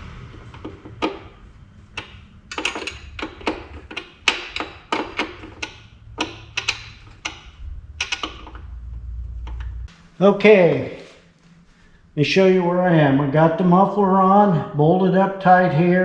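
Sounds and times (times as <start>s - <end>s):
hand tools clinking on metal: 0.0s - 9.8s.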